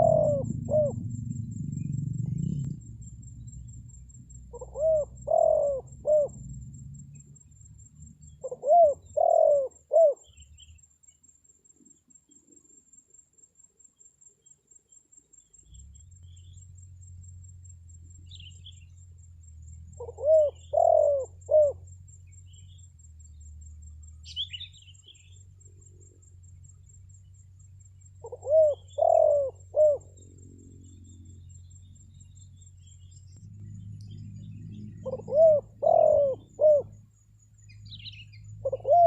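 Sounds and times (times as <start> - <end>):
dove cooing: 0.0 - 3.8, 4.5 - 6.6, 8.1 - 10.4, 19.9 - 21.9, 28.1 - 30.8, 33.5 - 37.0, 37.9 - 39.0
steady low hum: 0.0 - 11.7, 15.4 - 39.0
small birds chirping: 0.0 - 12.7, 14.4 - 39.0.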